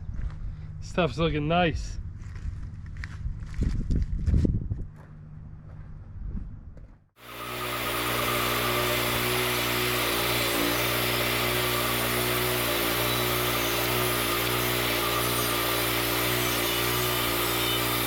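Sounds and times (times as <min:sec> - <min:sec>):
band blade cutting log: 0:07.2 - 0:18.0
sawmill engine under load: 0:07.2 - 0:18.0.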